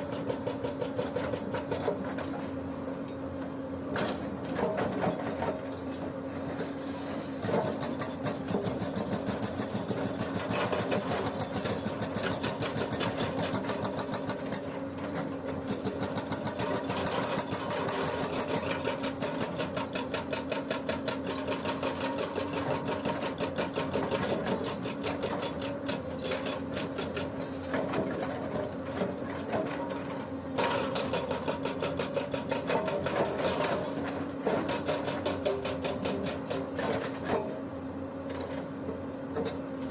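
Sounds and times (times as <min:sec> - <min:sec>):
excavator engine hum: 0:00.0 - 0:39.9.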